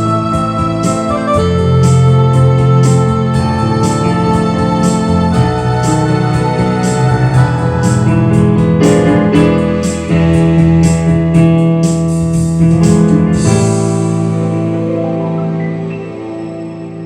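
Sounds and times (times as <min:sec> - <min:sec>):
light percussion beat: 0:00.0 - 0:14.3
piano-like keyboard chords: 0:00.0 - 0:17.0.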